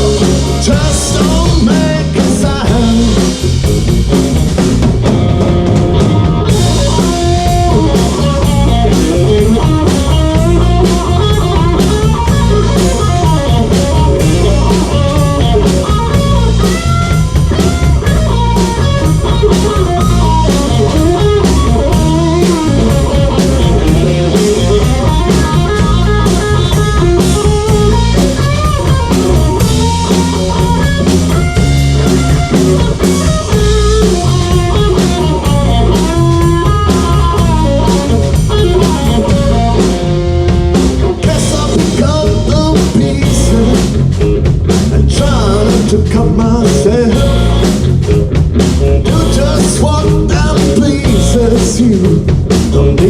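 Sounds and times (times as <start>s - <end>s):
drum kit beat: 0.0s - 53.0s
lead guitar solo: 5.0s - 41.3s.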